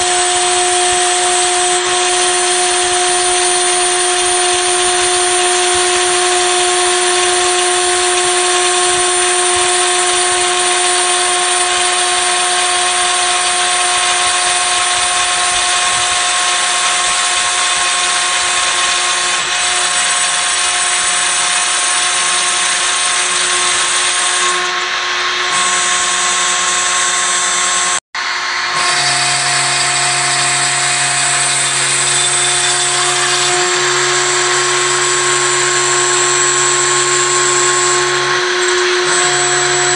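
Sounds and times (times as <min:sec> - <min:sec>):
router spindle whine: 0:00.0 - 0:39.9
machine low hum: 0:21.7 - 0:39.9
cutting noise: 0:28.6 - 0:39.9.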